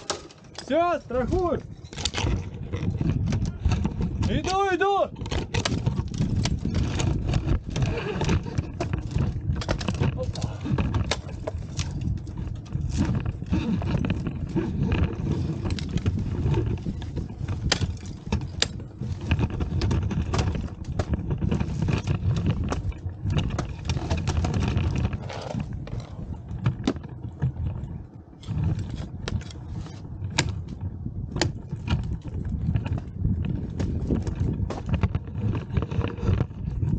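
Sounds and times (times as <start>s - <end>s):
metal climbing gear clinking: 0.0s - 4.5s
constant low rumble: 0.0s - 36.9s.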